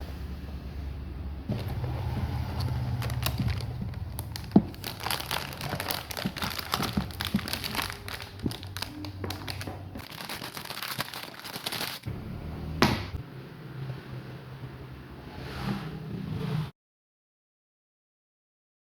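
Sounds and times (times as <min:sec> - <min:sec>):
low steady hum: 0:00.0 - 0:11.0, 0:12.1 - 0:15.4
plastic packaging crinkling: 0:01.5 - 0:12.1.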